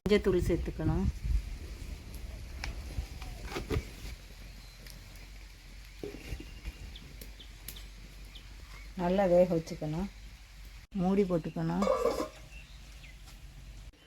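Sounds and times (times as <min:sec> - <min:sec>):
sharp knocks of pot and utensils: 0:11.8 - 0:12.4.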